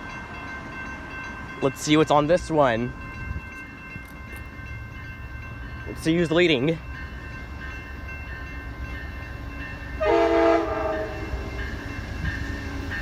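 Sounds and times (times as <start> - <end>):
locomotive air horn: 10.0 - 11.6.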